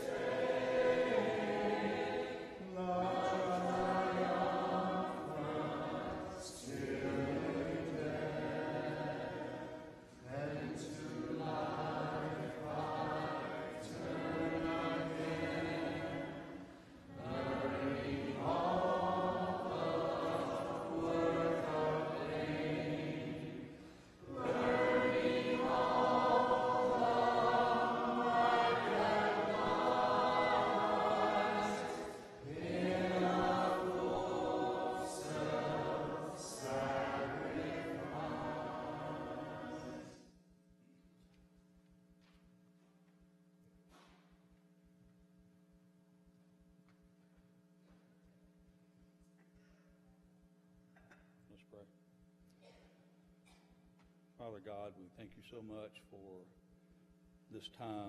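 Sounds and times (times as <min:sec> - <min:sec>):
congregation singing a hymn: 0:00.0 - 0:40.4.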